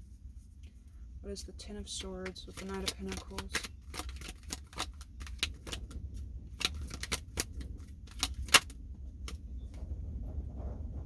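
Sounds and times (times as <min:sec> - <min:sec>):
cards being shuffled: 0:01.9 - 0:09.4.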